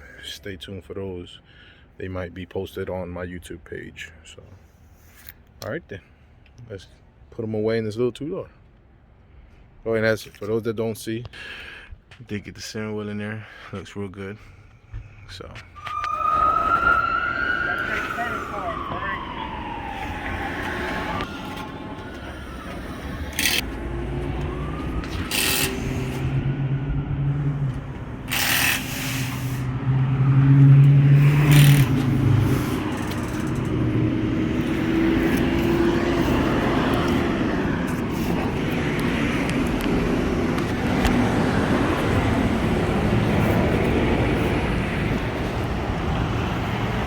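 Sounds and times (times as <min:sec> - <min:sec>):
traffic noise: 0:00.0 - 0:47.0
car engine humming: 0:15.7 - 0:47.0.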